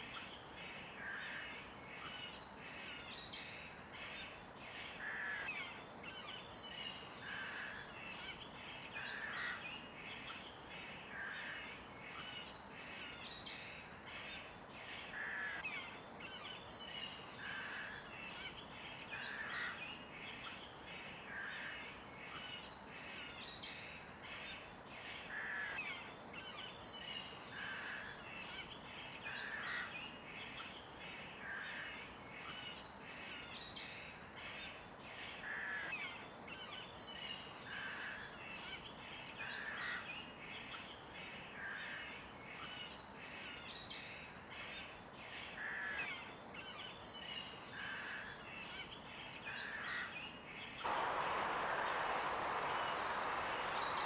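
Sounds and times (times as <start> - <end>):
faint steady hiss: 50.8 - 54.0
songbirds chirping: 50.8 - 54.0
low bird calls: 50.9 - 54.0.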